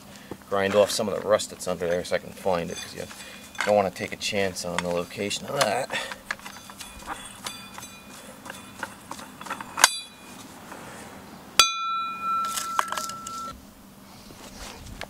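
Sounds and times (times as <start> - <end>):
metal pieces clinking: 1.9 - 3.9, 4.8 - 10.4, 11.9 - 13.5
loud ringing metal clank: 6.4 - 10.4, 11.6 - 13.6.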